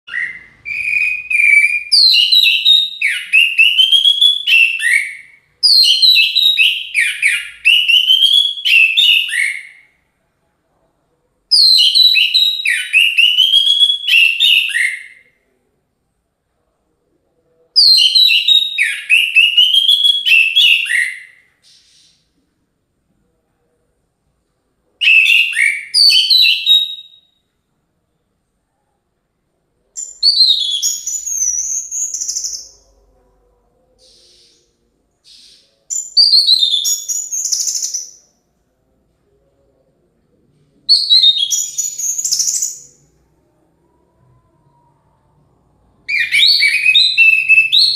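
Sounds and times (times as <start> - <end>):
thrush singing whistled notes: 0.1 - 9.8, 46.0 - 47.9.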